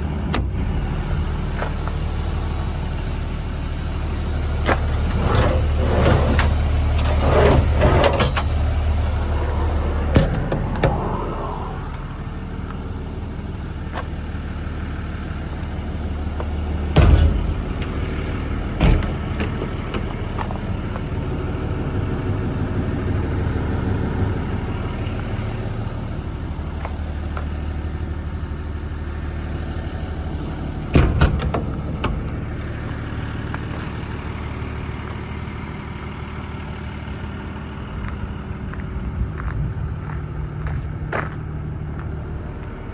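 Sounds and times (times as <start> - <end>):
diesel engine idling: 0.0 - 42.9
metal compartment doors banging: 4.7 - 8.6, 10.0 - 11.2, 16.4 - 21.2, 30.8 - 32.5.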